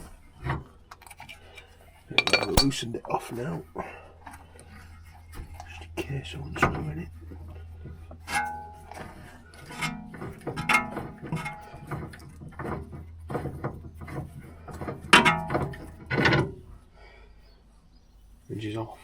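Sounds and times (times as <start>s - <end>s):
tools clanking on metal: 2.2s - 2.8s.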